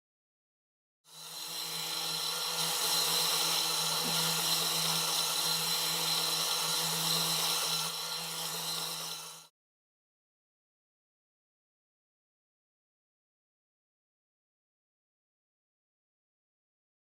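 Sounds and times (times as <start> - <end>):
small electric motor whirring: 1.1 - 9.5.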